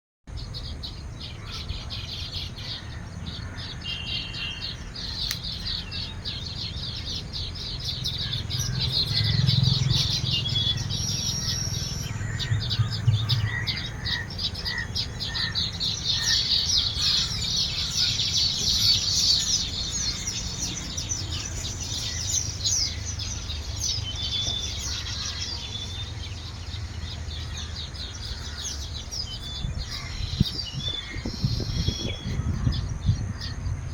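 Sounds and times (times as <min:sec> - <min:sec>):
birds chirping and chattering: 0:00.3 - 0:33.9
low rumble: 0:08.1 - 0:14.8.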